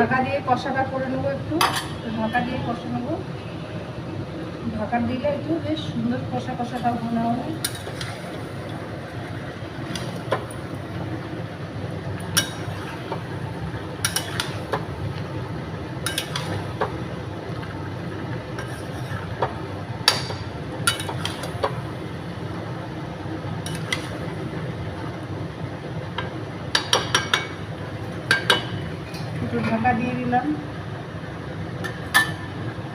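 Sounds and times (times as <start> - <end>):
spatula scraping cooking pan: 7.6 - 8.7, 12.3 - 13.3, 14.0 - 15.0, 16.0 - 17.0, 18.5 - 20.3, 20.9 - 21.8, 23.6 - 24.3.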